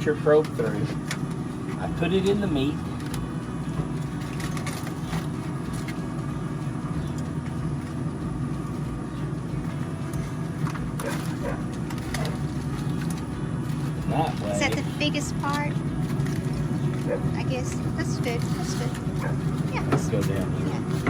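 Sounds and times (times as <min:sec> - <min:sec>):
pellet grill fan humming: 0:00.0 - 0:21.0.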